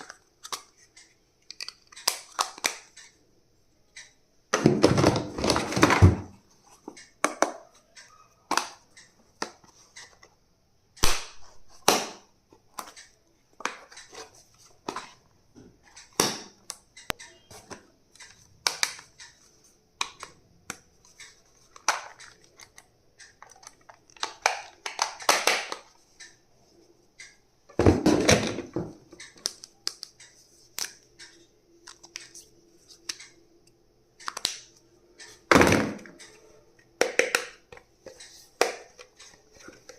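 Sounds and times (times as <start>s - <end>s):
plastic clicks and taps: 20.0s - 26.4s, 34.2s - 36.4s, 37.0s - 39.9s.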